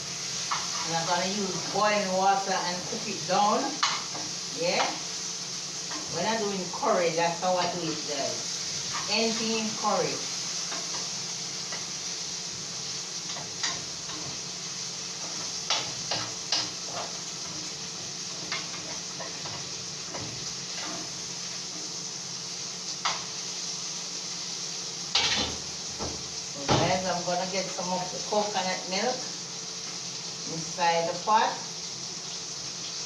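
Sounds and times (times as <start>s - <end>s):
chicken sizzling in oil: 0.0s - 33.0s.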